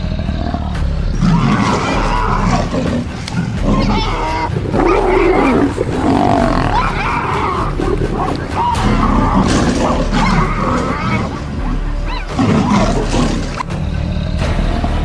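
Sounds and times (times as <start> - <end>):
lions growling and snarling: 0.0 - 15.0.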